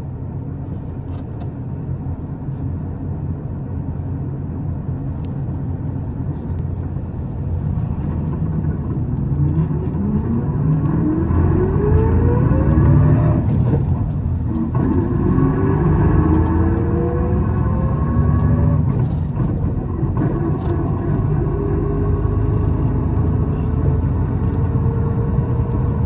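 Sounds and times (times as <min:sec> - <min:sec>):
bus engine rumble: 0:00.0 - 0:26.0
whine rising in pitch: 0:09.4 - 0:13.7.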